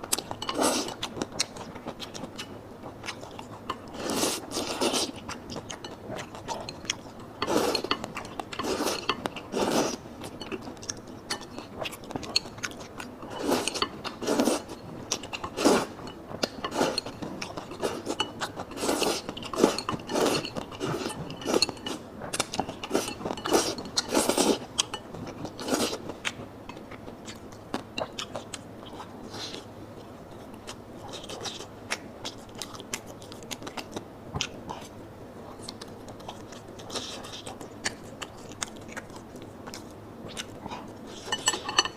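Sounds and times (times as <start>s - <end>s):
chewing noodles: 0.1s - 34.9s
chopsticks scraping a bowl: 7.4s - 10.6s, 13.2s - 22.0s, 22.8s - 24.7s, 41.1s - 41.9s.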